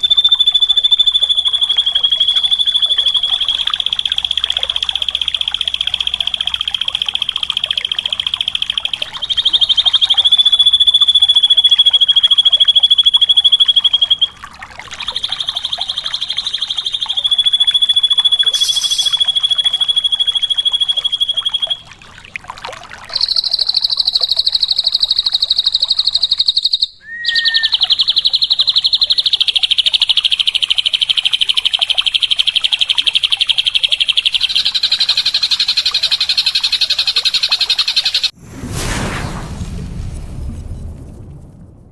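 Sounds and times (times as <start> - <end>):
bird buzzing trills: 0.0 - 22.2, 23.0 - 38.3
short whistled bird note: 15.0 - 21.8, 26.5 - 28.3.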